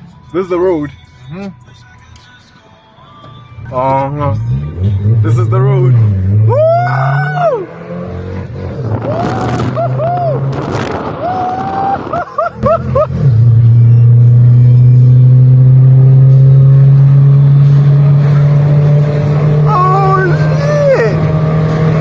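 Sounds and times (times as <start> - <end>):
car engine at high revs: 3.6 - 22.0
passengers whooping and shouting: 6.4 - 7.8, 9.0 - 13.2.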